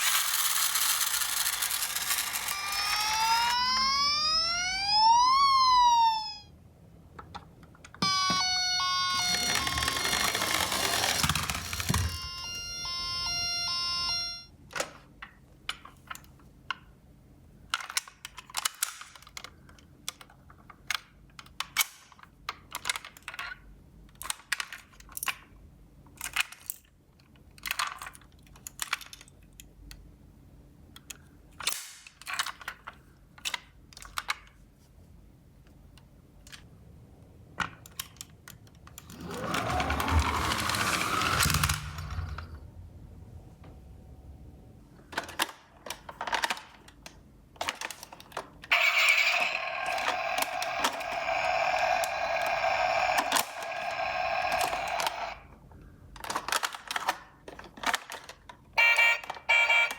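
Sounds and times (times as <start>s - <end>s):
plastic toy cars clicking: 0.0s - 4.1s, 9.0s - 12.4s, 17.6s - 30.1s, 30.9s - 34.6s, 37.6s - 42.6s, 45.1s - 55.4s, 56.1s - 59.9s
toy siren beeping: 2.0s - 6.5s, 8.0s - 14.5s, 48.7s - 55.4s, 58.8s - 59.9s
rising siren wail: 2.4s - 6.5s.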